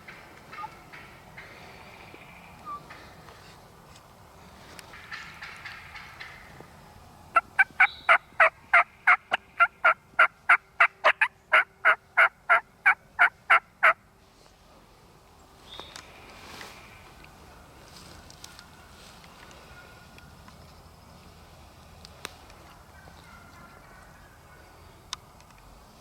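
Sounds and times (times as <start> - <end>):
turkey yelping: 0.5 - 0.8, 7.4 - 14.0.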